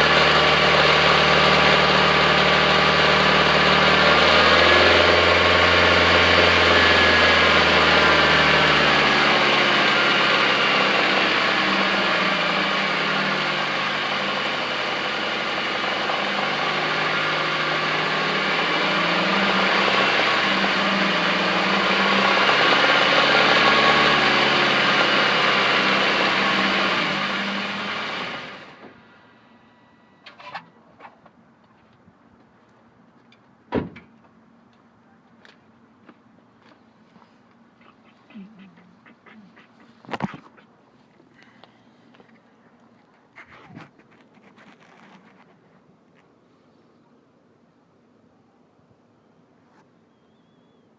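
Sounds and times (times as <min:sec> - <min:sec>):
car engine running: 0:00.0 - 0:30.6.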